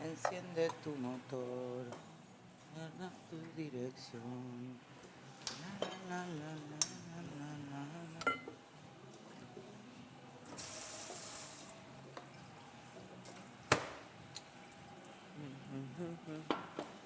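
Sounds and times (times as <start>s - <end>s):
tap water running: 10.6s - 15.3s.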